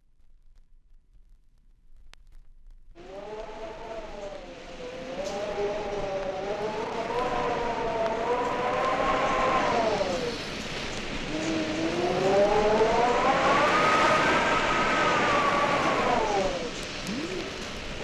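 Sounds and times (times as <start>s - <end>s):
eerie wavering howling tones: 11.2s - 18.0s.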